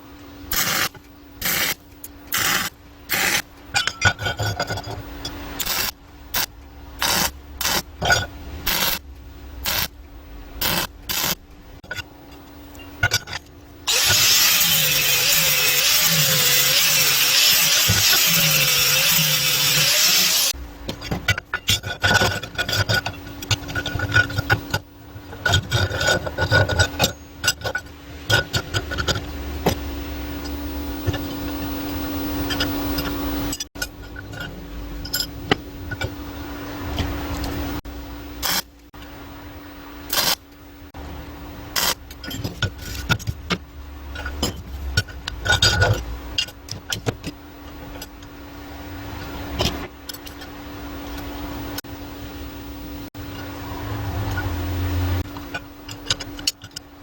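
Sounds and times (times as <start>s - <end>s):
steady hum: 0.0s - 57.0s
power saw cutting: 13.9s - 20.6s
clicks and knocks from tools: 55.2s - 56.9s.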